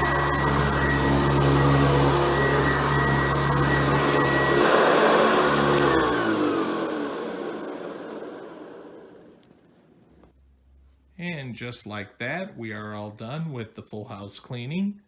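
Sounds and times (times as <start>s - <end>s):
motor winding down: 0.0s - 9.6s
vacuum cleaner motor running: 0.0s - 9.7s
vacuum switch click: 4.0s - 7.9s.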